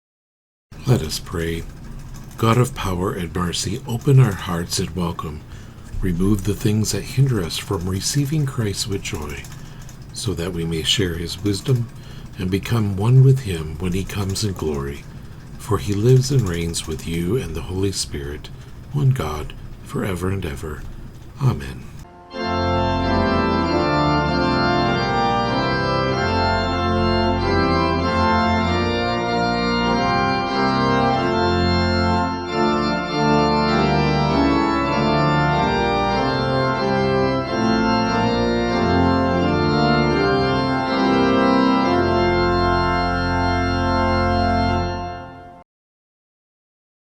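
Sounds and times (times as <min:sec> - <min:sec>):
organ playing slow chords: 0:00.8 - 0:45.6.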